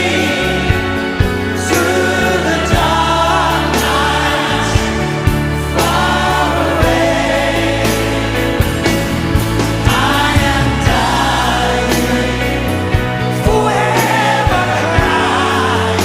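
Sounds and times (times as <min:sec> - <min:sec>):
choir-like singing: 0:00.0 - 0:16.0
held bass notes: 0:00.0 - 0:16.0.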